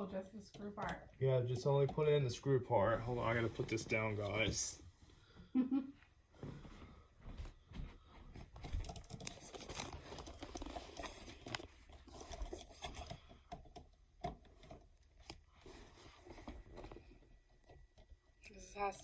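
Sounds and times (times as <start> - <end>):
rustling handling noises: 1.4 - 5.3, 6.4 - 19.0
small irregular clicks: 8.6 - 15.7.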